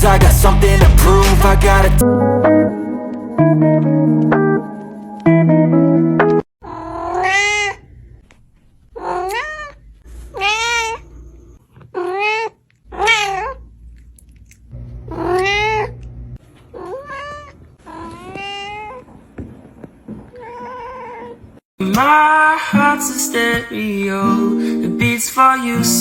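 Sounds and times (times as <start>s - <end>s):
cat meowing: 6.6s - 8.0s, 8.9s - 11.1s, 11.8s - 13.6s, 15.1s - 16.0s, 16.7s - 19.1s.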